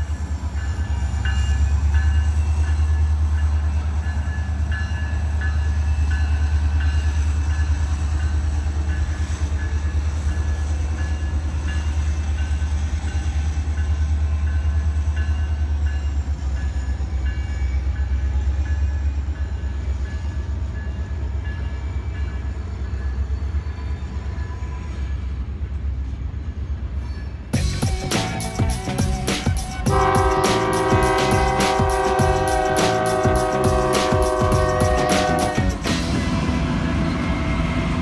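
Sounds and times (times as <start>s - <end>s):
train rumbling past: 0.0s - 38.0s.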